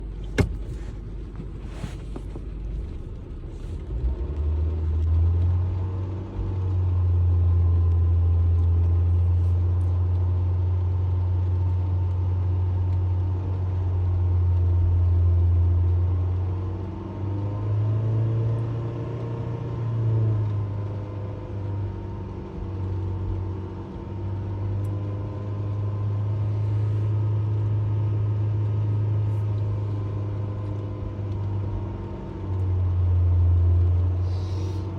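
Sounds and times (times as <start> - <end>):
car engine droning: 0.0 - 34.9.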